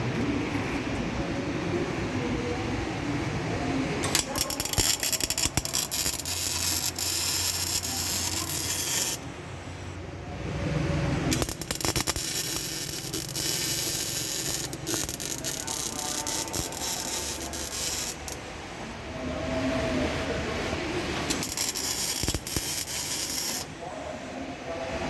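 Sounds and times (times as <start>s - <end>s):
metal crackling and clicking: 4.0s - 9.2s, 11.3s - 18.4s, 21.3s - 23.7s.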